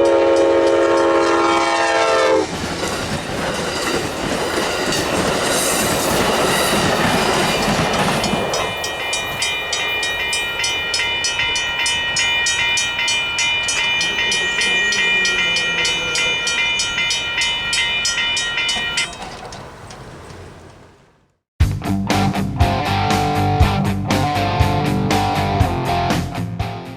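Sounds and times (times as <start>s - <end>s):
railroad crossing bell ringing: 0.0s - 21.2s
train roaring with wheel clatter: 0.0s - 21.4s.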